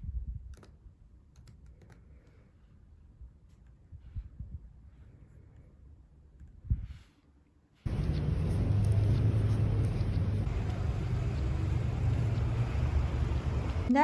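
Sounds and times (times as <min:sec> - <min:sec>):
loud low rumble: 0:07.9 - 0:13.9.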